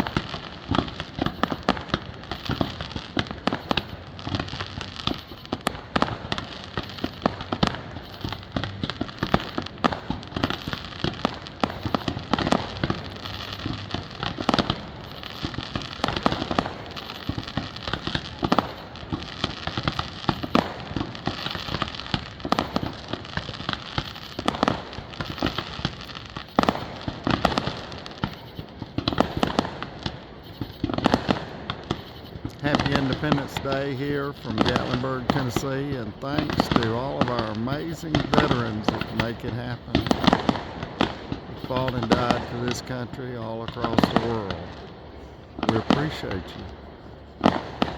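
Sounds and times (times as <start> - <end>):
fireworks bursting: 0.0 - 47.9
fireworks crackle: 0.0 - 47.9.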